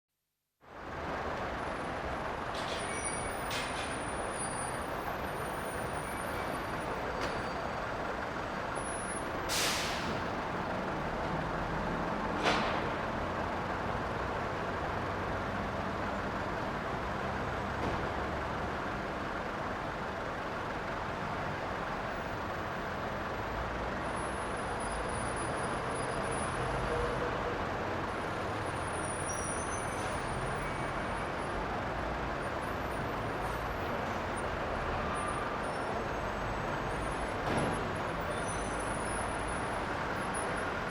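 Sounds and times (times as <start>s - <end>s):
bus engines rumbling: 0.6s - 40.9s
air brakes hissing: 9.4s - 10.3s.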